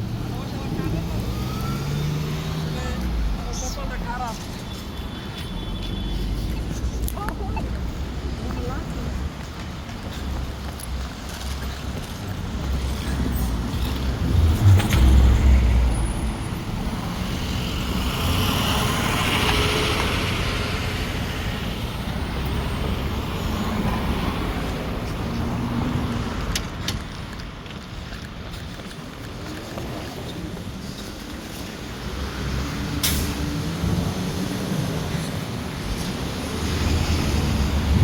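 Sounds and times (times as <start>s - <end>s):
cars and trucks passing: 0.0s - 38.0s
passing vehicle hiss: 31.9s - 38.0s
heavy low rumble: 37.7s - 38.0s.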